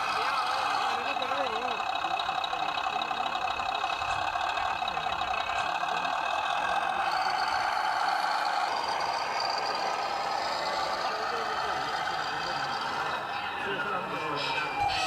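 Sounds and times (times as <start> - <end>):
model machine mechanical whine: 0.0 - 15.0.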